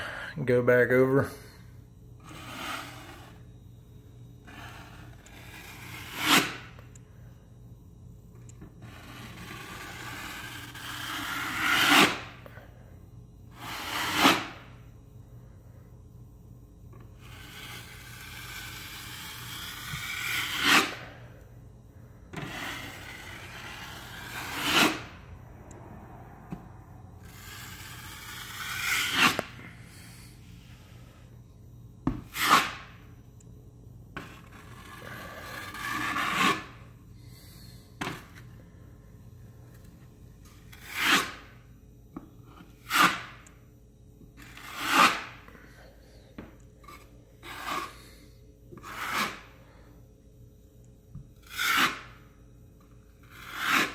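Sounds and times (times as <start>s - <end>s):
drywall knife scraping compound: 2.2s - 3.5s, 4.4s - 6.8s, 8.6s - 12.6s, 13.5s - 14.8s, 17.0s - 21.2s, 22.3s - 25.2s, 27.2s - 31.1s, 32.2s - 33.0s, 34.2s - 36.9s, 37.6s - 38.5s, 40.4s - 41.6s, 42.5s - 43.5s, 44.4s - 46.2s, 46.8s - 49.9s, 51.4s - 53.9s.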